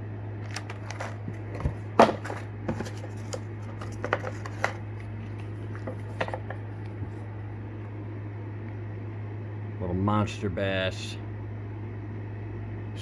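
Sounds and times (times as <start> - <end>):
steady low hum: 0.0 - 13.0
plastic packaging clicks and crinkles: 0.4 - 6.5.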